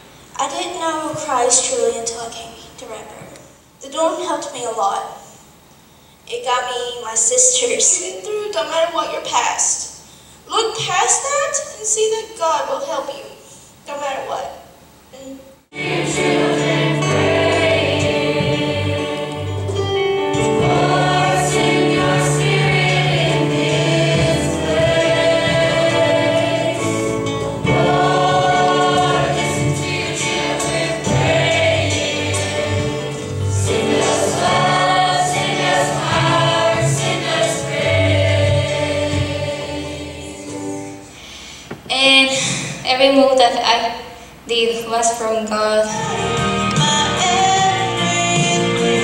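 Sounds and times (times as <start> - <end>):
sustained low accompaniment: 15.7 - 41.0
choir singing gospel song: 15.7 - 41.2, 45.9 - 49.0.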